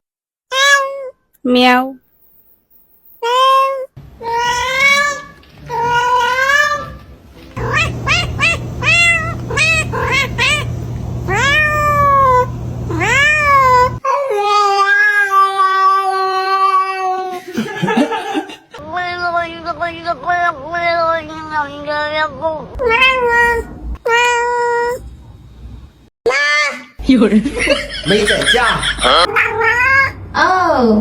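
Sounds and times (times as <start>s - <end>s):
cats meowing: 3.3s - 7.0s, 7.6s - 17.3s, 22.8s - 25.0s, 29.1s - 30.2s.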